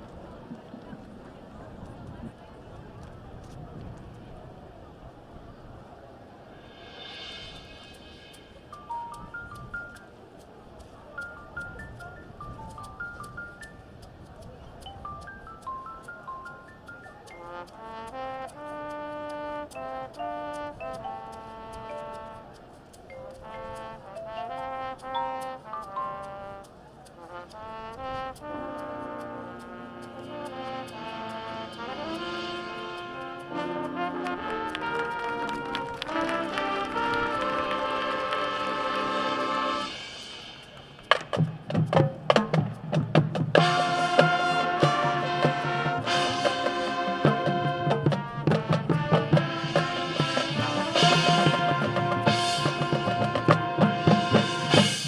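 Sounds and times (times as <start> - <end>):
high ticks keeping time: 8.6 - 38.2
brass band playing chords: 17.3 - 55.0
marching drumline hits: 33.5 - 55.0.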